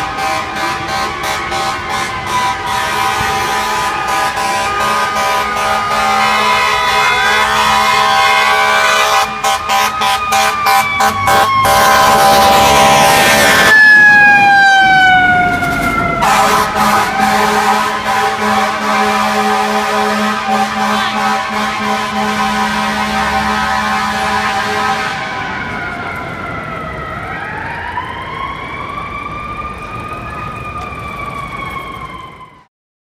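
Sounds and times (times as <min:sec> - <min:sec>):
fire truck air horn blasts: 0:00.0 - 0:14.0, 0:15.9 - 0:25.7
wailing siren: 0:00.0 - 0:32.7.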